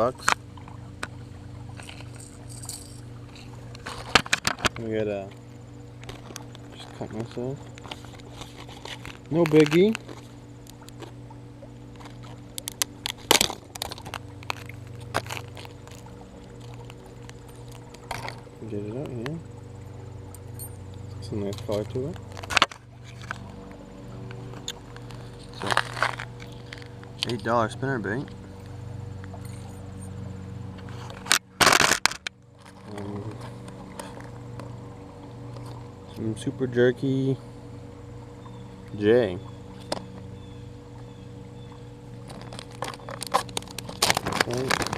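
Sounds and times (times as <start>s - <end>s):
steady low hum: 0.0s - 44.9s
packaging crinkling: 7.8s - 11.1s, 11.9s - 18.4s, 24.5s - 27.2s, 42.2s - 44.9s.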